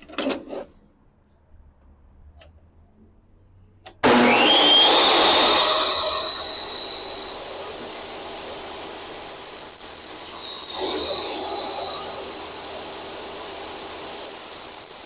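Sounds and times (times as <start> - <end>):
table saw motor whining: 4.0 - 15.0.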